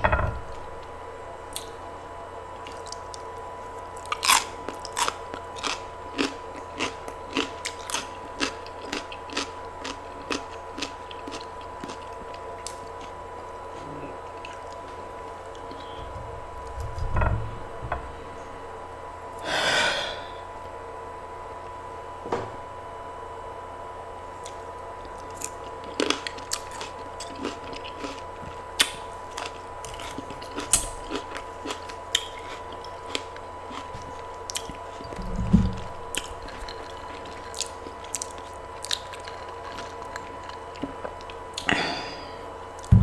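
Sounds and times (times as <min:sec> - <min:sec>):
person chewing crunchy food: 0:01.5 - 0:01.8, 0:02.6 - 0:16.0, 0:24.4 - 0:43.0
dull thumps: 0:35.2 - 0:36.0.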